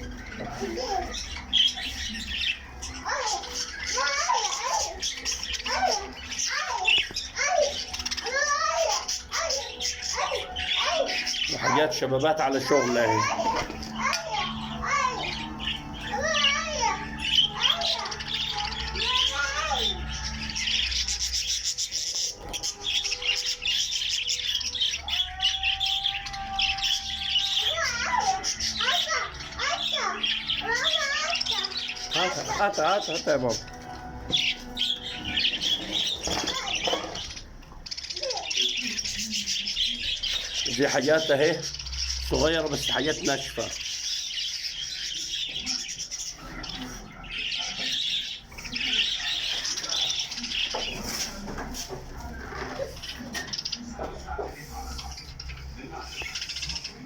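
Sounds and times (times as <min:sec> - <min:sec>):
small birds chirping: 0:00.0 - 0:57.0.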